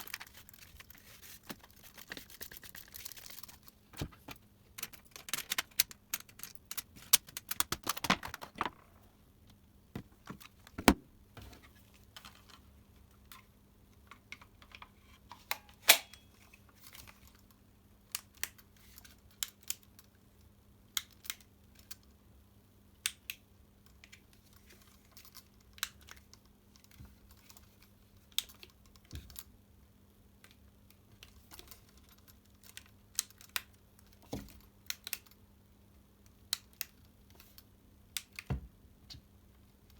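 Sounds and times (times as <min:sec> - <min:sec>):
plastic parts clicking: 0:00.0 - 0:09.1.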